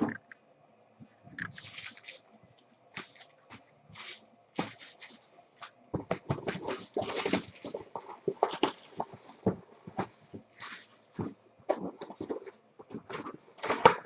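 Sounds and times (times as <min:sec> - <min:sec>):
cards being handled: 0:01.5 - 0:02.3, 0:03.0 - 0:10.9
wrappers crinkling being torn open: 0:01.5 - 0:05.4.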